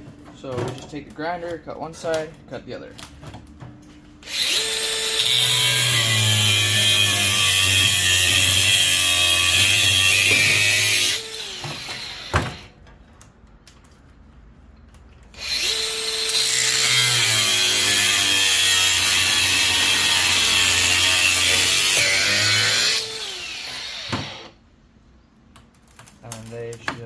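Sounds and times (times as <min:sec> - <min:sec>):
angle grinder cutting metal: 0:04.2 - 0:12.7, 0:15.4 - 0:24.6.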